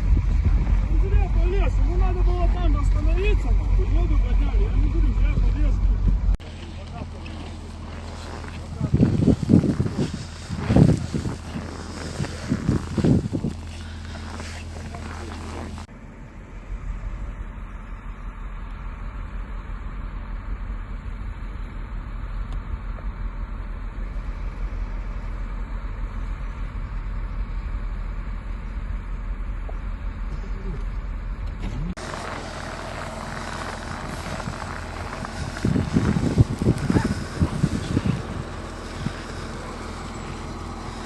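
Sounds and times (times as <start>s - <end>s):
wind rushing over microphone: 0.0s - 6.4s, 8.2s - 15.9s, 32.0s - 41.0s
muffled vehicle engine drone: 0.0s - 41.0s.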